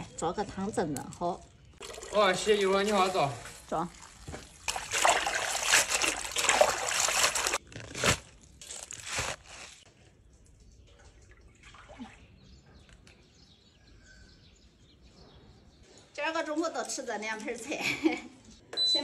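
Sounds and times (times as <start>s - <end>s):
water running and splashing: 1.8s - 7.6s.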